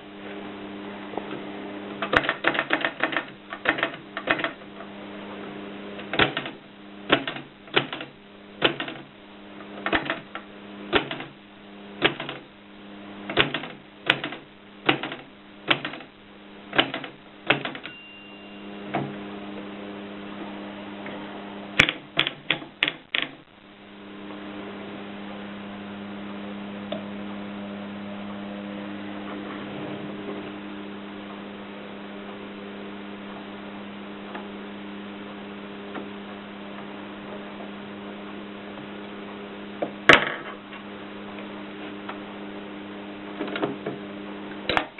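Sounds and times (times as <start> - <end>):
steady electrical hum: 0.0 - 44.9
typewriter clacking: 2.0 - 4.6, 6.0 - 9.0, 13.3 - 16.1, 16.8 - 17.9
typewriter bell ring: 17.8 - 18.7.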